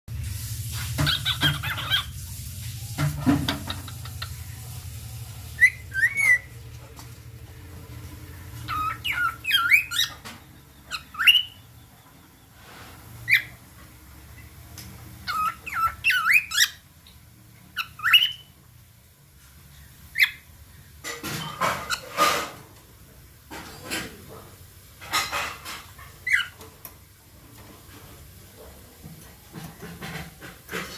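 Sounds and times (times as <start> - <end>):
cockatiel whistling: 5.5 - 6.5.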